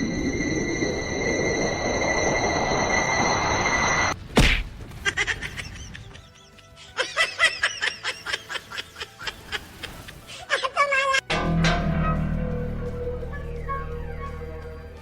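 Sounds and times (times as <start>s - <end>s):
music with plucked notes: 11.3s - 15.0s.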